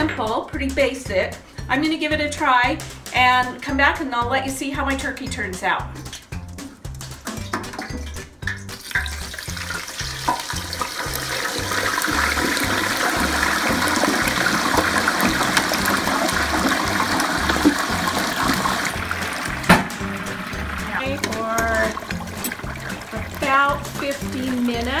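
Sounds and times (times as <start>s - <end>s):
music with bass beat: 0.0s - 25.0s
oil bubbling in a fryer: 7.4s - 25.0s.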